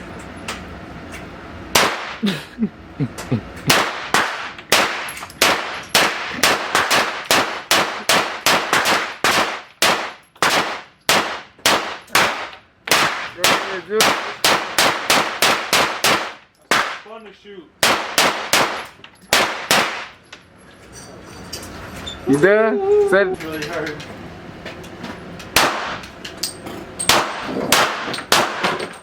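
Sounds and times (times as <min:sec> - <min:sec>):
gunshots with echo: 0:01.8 - 0:02.2, 0:03.7 - 0:17.1, 0:17.8 - 0:20.2, 0:25.6 - 0:26.0, 0:27.1 - 0:28.8.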